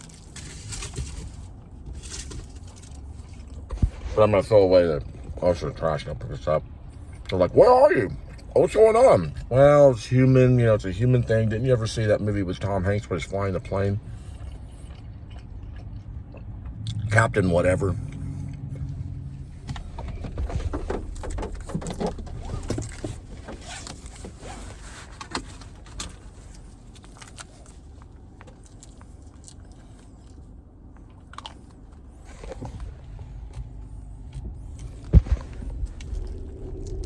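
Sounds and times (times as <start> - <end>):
clicks and rustles of handling: 0.0 - 4.2, 19.6 - 30.4
low steady rumble: 0.0 - 37.0.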